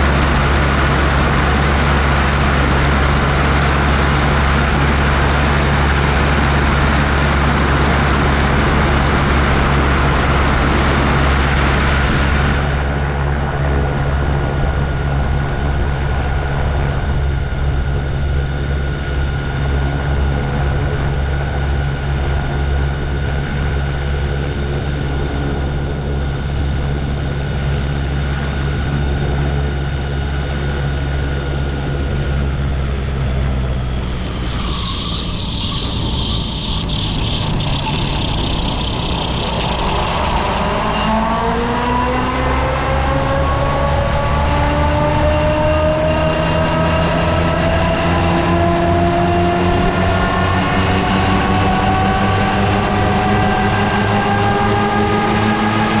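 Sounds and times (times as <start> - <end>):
engine and propeller drone: 0.0 - 56.0
loud rushing noise: 33.9 - 42.7, 43.6 - 56.0.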